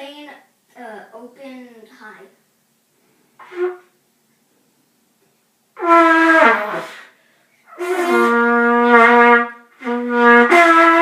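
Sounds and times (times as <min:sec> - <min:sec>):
brass horn wavering note: 0:03.4 - 0:03.9, 0:05.8 - 0:07.1, 0:07.7 - 0:11.0.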